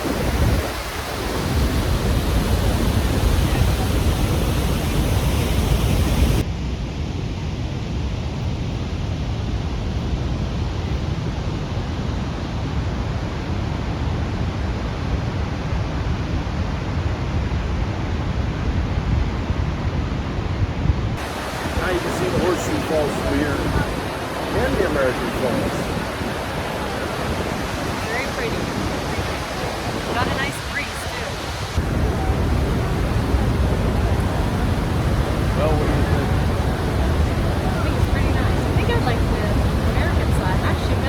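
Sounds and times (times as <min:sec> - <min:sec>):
waterfall rushing: 0:00.0 - 0:06.4, 0:21.2 - 0:41.0.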